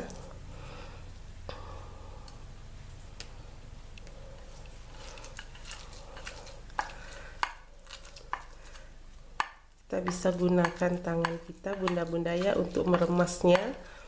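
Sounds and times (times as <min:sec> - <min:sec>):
hands crushing wet leaves: 0:04.6 - 0:14.0.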